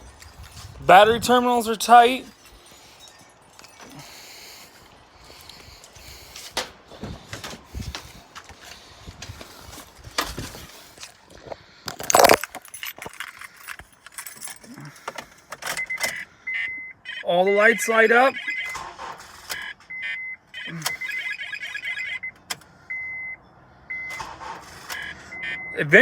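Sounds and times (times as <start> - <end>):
keys jangling: 2.2 - 8.0, 11.9 - 16.2
handling knocks and clicks: 6.4 - 16.2.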